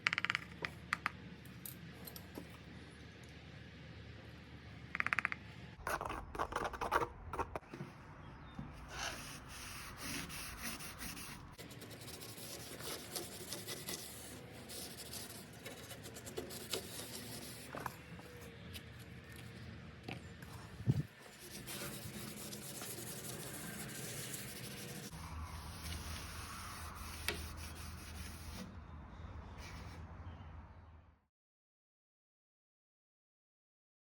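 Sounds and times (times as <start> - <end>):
rubbing and scraping wood stain: 21.2 - 28.7.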